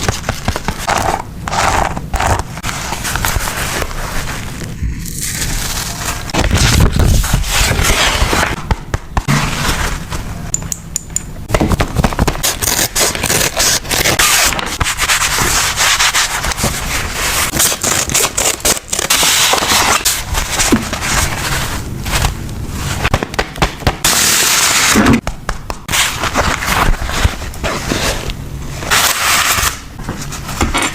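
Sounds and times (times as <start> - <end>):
paper rubbing and crackling: 0.0 - 10.5, 11.7 - 23.4, 25.8 - 30.9.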